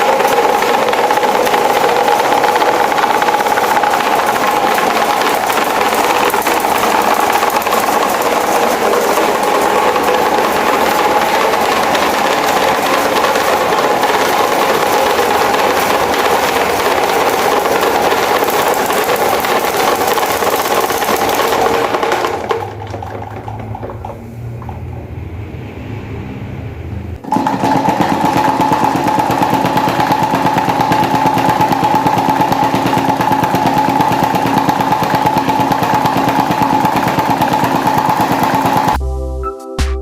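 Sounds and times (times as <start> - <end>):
electric fan buzzing and rattling: 0.0 - 39.0
low hum: 22.4 - 27.6.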